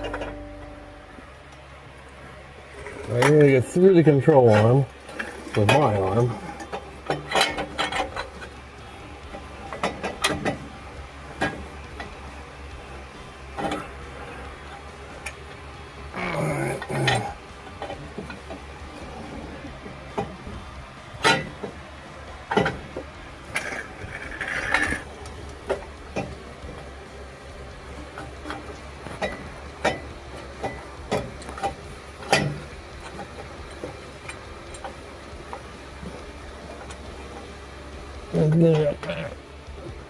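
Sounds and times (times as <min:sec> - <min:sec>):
hand tools clinking on metal: 0:00.0 - 0:01.1
low steady hum: 0:00.0 - 0:40.0.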